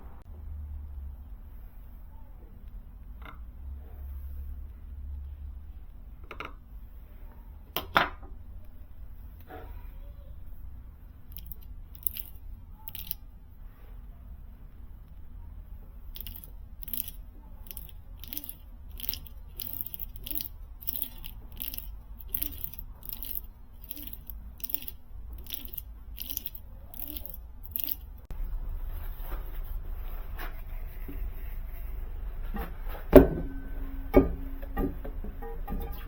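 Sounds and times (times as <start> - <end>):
low steady hum: 0.0 - 36.0
sharp scraping clicks: 16.1 - 28.3.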